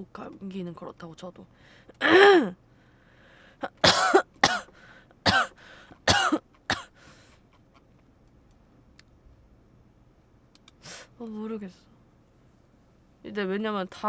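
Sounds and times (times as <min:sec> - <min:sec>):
person coughing: 0:02.0 - 0:02.5, 0:03.6 - 0:06.9.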